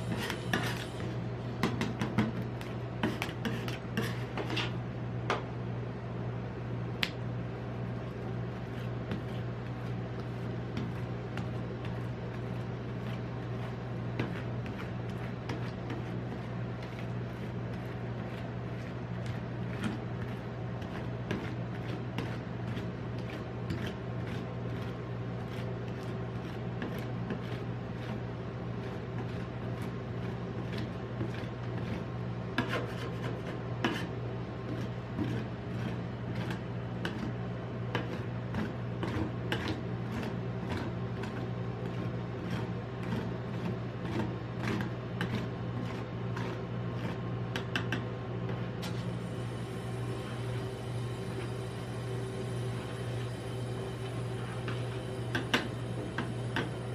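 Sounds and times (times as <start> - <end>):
steady low hum: 0.0 - 56.9
metal spatulas scraping and tapping: 32.6 - 34.1.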